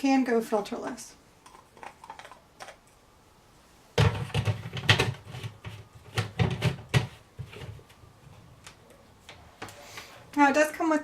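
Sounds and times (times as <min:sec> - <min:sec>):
plastic parts knocking and clicking: 0:04.0 - 0:07.8.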